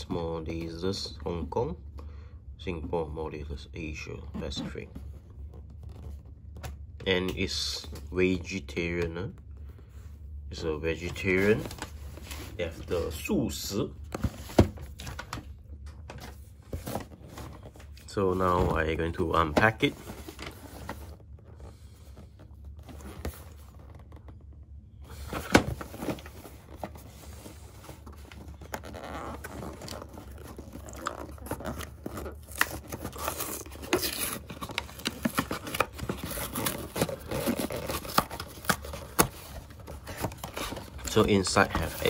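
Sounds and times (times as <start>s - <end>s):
packaging tearing and crinkling: 28.1s - 41.3s.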